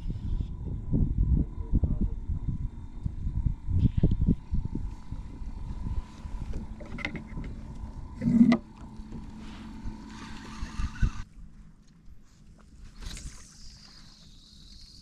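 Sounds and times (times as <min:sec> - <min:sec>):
water rumbling against hull: 0:00.0 - 0:11.3.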